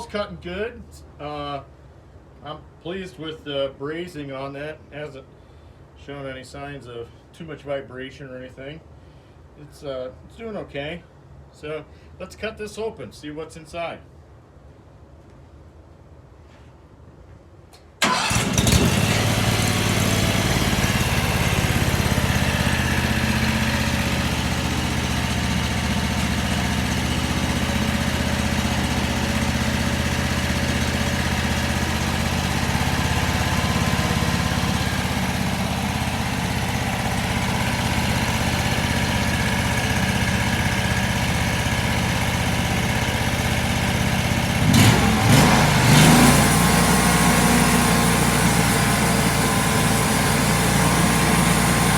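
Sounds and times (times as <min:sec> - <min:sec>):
sawmill engine running: 0:18.0 - 0:51.9.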